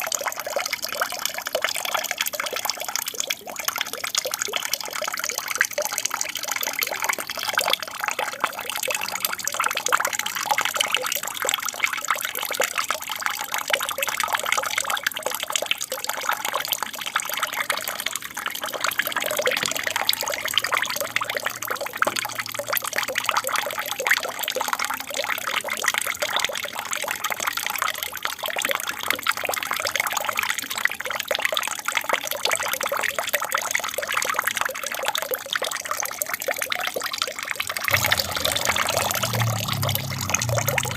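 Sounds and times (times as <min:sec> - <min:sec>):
aquarium waterfall splashing: 0:37.6 - 0:40.9.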